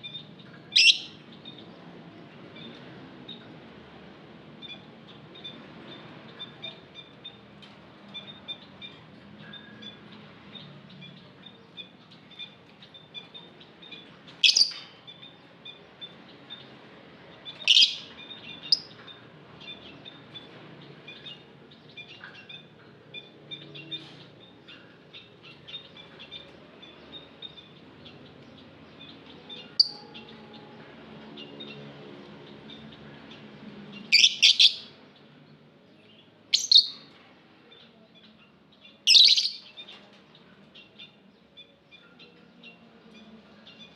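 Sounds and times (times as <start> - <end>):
loud high-pitched bird calls: 0.0 - 1.8, 8.1 - 16.8, 17.4 - 35.4, 36.0 - 37.1, 37.7 - 40.2
birds twittering softly: 0.0 - 43.9.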